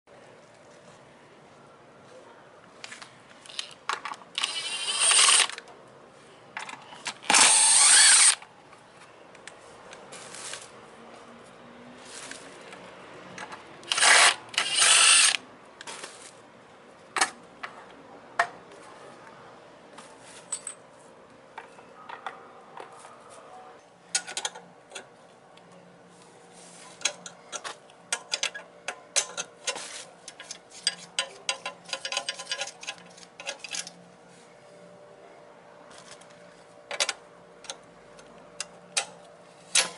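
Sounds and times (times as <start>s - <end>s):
power tool bursts: 7.3s - 8.4s.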